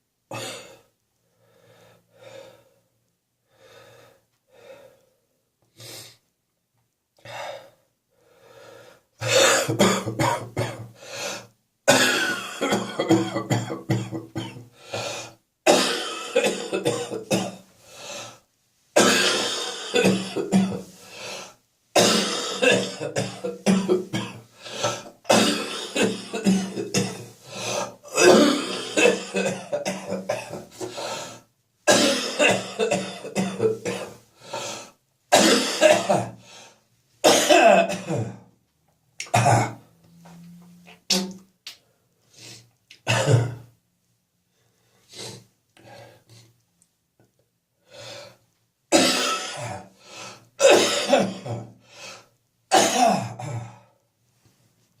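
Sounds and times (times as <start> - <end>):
person coughing wetly: 9.2 - 10.9, 11.9 - 14.6, 15.7 - 17.6, 19.0 - 20.9, 22.0 - 30.9, 31.9 - 34.2, 35.3 - 36.4, 37.2 - 38.4, 39.3 - 39.8, 43.1 - 43.6, 48.9 - 49.9, 50.6 - 51.7, 52.7 - 53.7
person clearing throat: 11.9 - 14.6, 19.0 - 20.9, 22.0 - 31.0, 31.9 - 34.2, 35.3 - 36.4, 37.3 - 38.4, 39.2 - 39.8, 43.1 - 43.7, 48.9 - 49.9, 50.6 - 51.7, 52.7 - 53.8.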